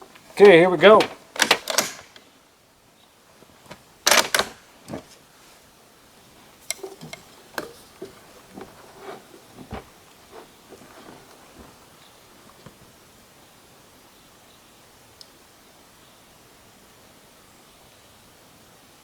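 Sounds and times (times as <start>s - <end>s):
rifle bolt clicks and knocks: 1.0s - 2.2s, 4.1s - 5.0s.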